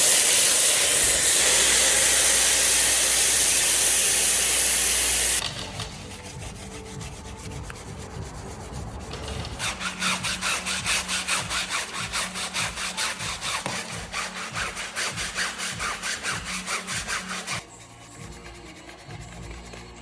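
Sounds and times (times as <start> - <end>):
rapid rubbing strokes: 0.0 - 20.0.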